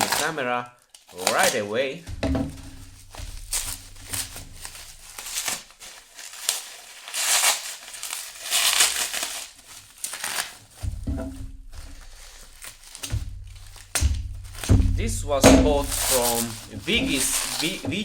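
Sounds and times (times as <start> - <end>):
packaging crinkling and rustling: 0.0 - 18.0
small knocks: 2.1 - 5.5, 10.5 - 18.0.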